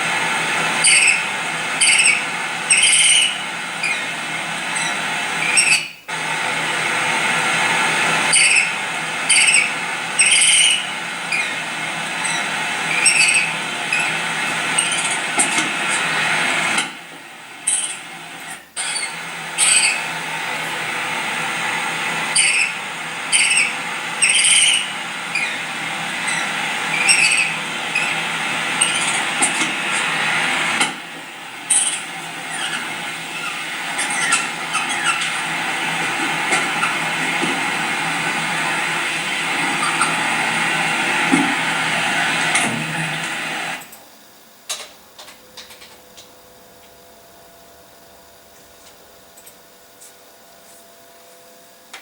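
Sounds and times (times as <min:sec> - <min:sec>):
barn owl screeching: 0:00.8 - 0:06.0, 0:08.3 - 0:16.4, 0:17.6 - 0:20.3, 0:22.2 - 0:30.9, 0:31.6 - 0:43.8.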